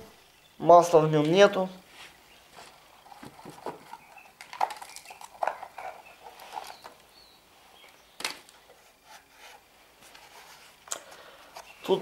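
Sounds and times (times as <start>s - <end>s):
plastic parts clicking and knocking: 3.0s - 7.1s, 8.2s - 8.6s.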